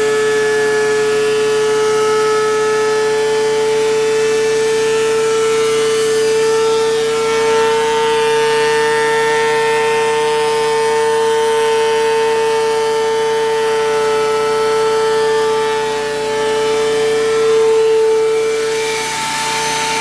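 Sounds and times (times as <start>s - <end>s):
thickness planer whining: 0.0s - 20.0s.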